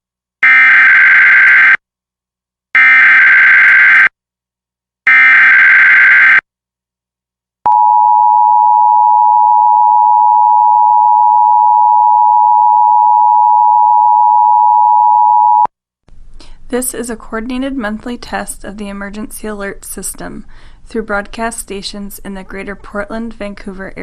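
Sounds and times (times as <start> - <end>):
two-tone attention signal: 7.7 - 15.7.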